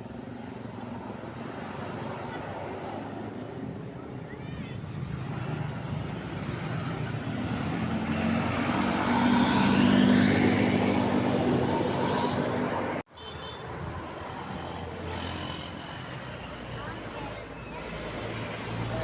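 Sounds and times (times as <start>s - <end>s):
bus driving past: 4.8s - 13.1s, 13.8s - 19.0s.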